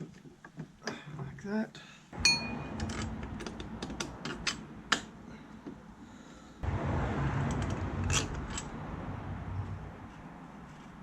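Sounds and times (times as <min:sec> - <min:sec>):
scraping and rumbling handling noise: 0:02.2 - 0:05.8, 0:06.7 - 0:11.0.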